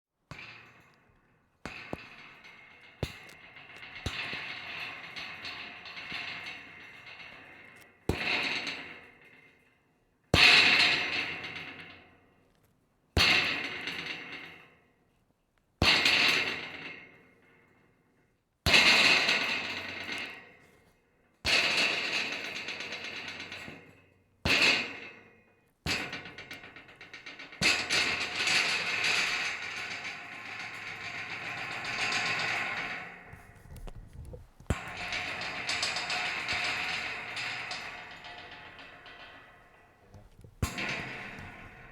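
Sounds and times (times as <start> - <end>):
scrap metal rattling and clattering: 26.0 - 41.9.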